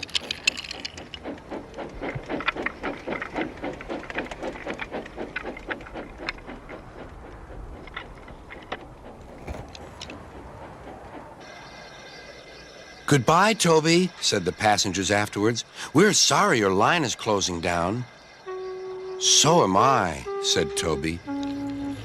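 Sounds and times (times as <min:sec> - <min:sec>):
low rumble: 0:00.0 - 0:11.4
steam locomotive chuffing: 0:00.0 - 0:22.0.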